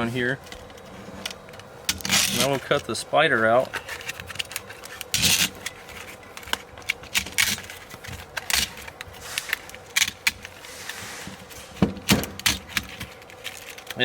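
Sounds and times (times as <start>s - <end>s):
razor blade scraping: 8.4s - 11.7s.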